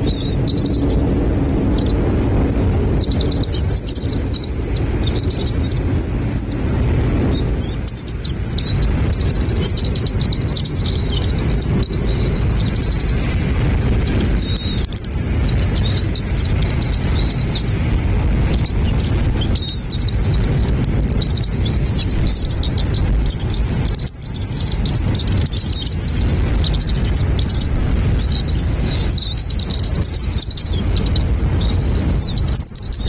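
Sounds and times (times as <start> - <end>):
small birds chirping: 0.0 - 33.0
steady low rumbling: 0.0 - 33.0.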